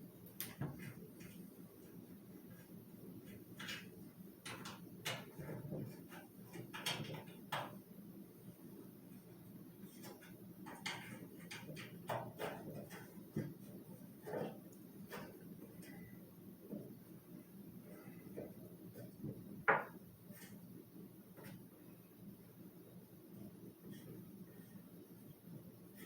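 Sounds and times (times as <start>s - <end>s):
steady low hum: 0.0s - 26.0s
clicks and knocks of fan parts: 0.2s - 1.4s, 3.2s - 7.8s, 9.9s - 16.9s.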